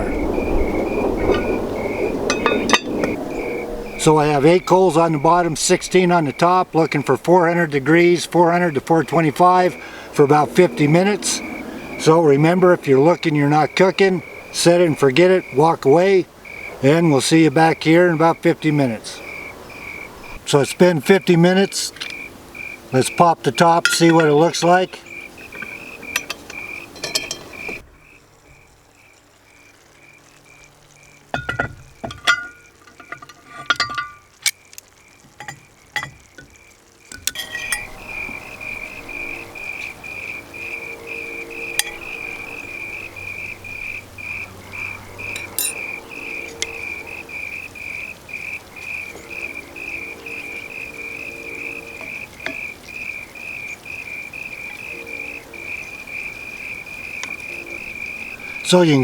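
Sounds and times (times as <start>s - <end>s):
crickets chirping: 0.0s - 59.0s
sharp clicks and knocks: 31.3s - 37.8s.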